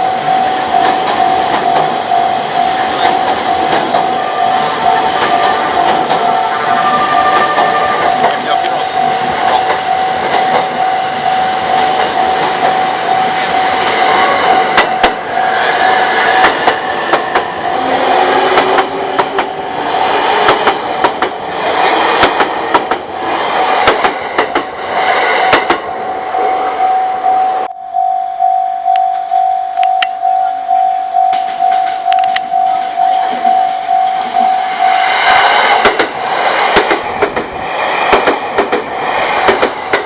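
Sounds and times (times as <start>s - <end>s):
level crossing warning bell: 0.0s - 15.4s, 17.4s - 18.8s, 25.8s - 35.2s
train wheels clicking on rail joints: 0.2s - 25.9s, 31.2s - 40.0s.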